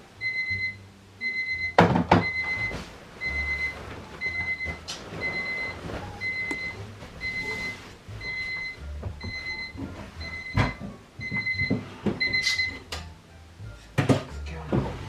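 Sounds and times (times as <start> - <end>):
alarm clock beeping: 0.2 - 12.8
knocks and thumps of handling: 3.6 - 13.1, 13.9 - 15.0.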